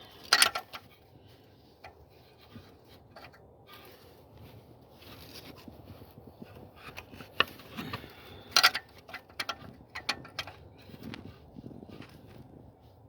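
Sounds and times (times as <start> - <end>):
tools clicking and clanking: 0.0 - 0.9, 6.8 - 10.7
tools scraping and rubbing: 1.8 - 12.4.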